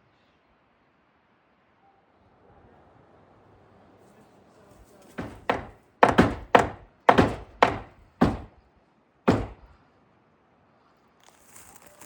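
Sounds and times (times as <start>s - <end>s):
sharp knocks on wood: 5.2s - 8.6s, 9.3s - 9.7s.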